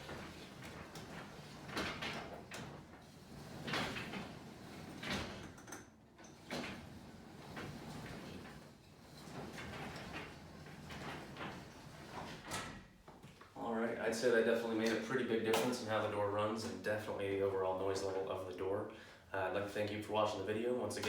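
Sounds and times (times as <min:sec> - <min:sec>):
garage door rolling rumble: 0:00.0 - 0:12.8.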